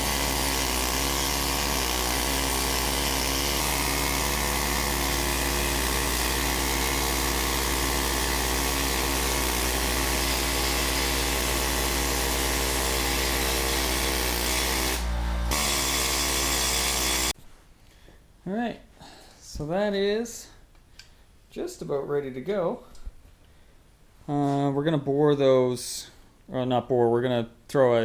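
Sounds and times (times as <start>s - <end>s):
electric power drill running: 0.0s - 17.4s.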